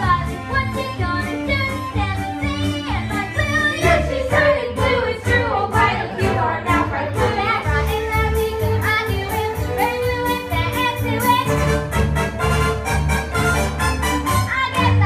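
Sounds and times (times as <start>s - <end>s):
child singing: 0.0s - 11.5s
musical accompaniment with steady beat: 0.0s - 15.0s.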